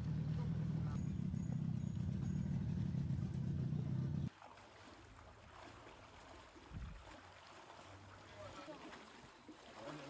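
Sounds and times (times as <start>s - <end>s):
boat motor rumbling: 0.0s - 4.3s.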